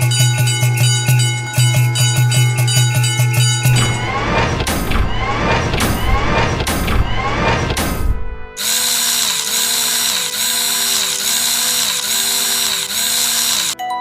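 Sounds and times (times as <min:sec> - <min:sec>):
tinkly chime melody: 0:00.0 - 0:04.3, 0:09.3 - 0:14.0
loud rumbling: 0:02.8 - 0:08.7
power drill whirring: 0:08.6 - 0:13.8.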